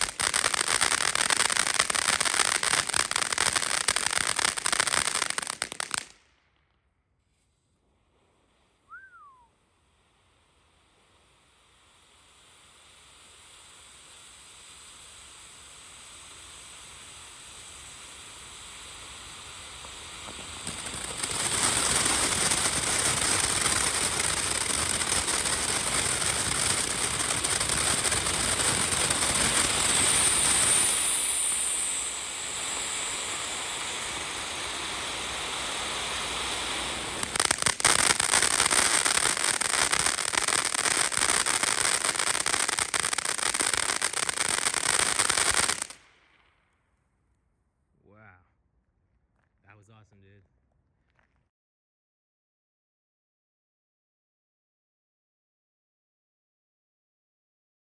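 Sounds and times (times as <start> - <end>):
crackling pops: 0.0 - 6.2, 37.2 - 46.8
firework fountain hissing: 0.0 - 6.4, 7.1 - 46.4.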